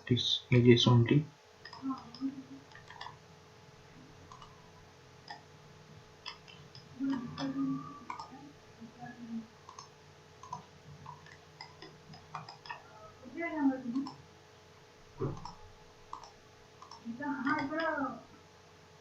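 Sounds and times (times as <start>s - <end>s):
computer mouse clicking: 1.6s - 3.2s, 4.2s - 5.4s, 6.2s - 8.4s, 9.6s - 12.8s, 13.9s - 14.2s, 15.2s - 18.0s.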